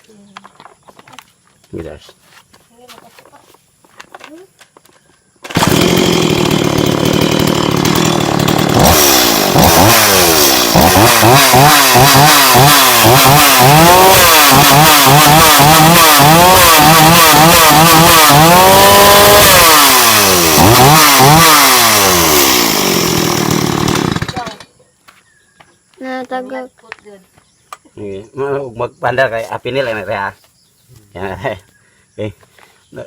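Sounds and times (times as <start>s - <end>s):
chainsaw idling and revving: 5.4s - 24.7s.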